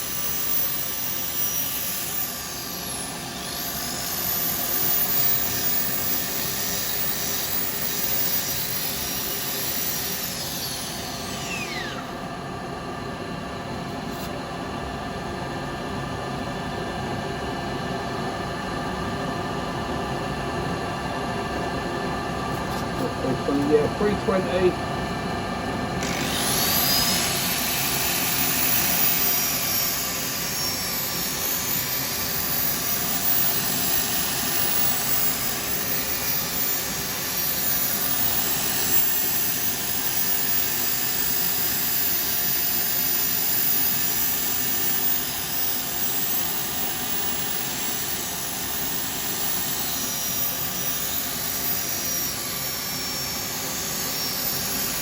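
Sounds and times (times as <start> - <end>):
high whine spinning up: 0.0 - 12.6, 20.7 - 55.0
lathe sanding wood: 26.0 - 36.1.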